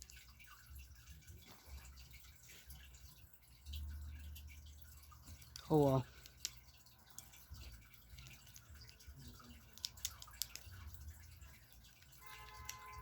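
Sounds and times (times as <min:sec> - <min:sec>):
low steady hum: 0:00.0 - 0:13.0
plastic pieces clicking together: 0:08.2 - 0:10.8.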